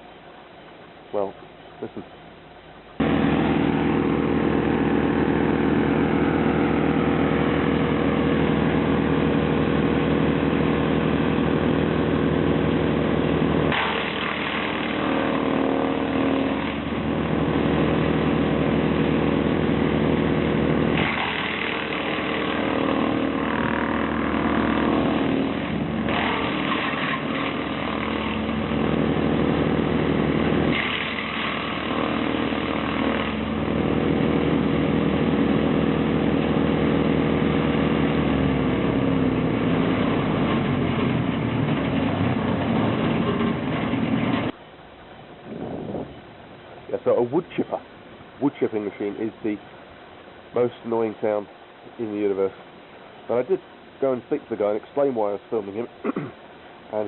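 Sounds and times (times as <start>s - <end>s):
harsh grinding: 3.0s - 44.6s
wood chipper running: 3.0s - 44.6s.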